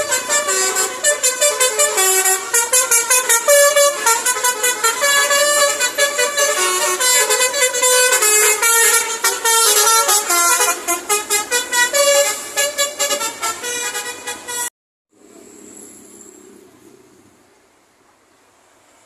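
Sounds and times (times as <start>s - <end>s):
musical bus horn melody: 0.0s - 14.7s.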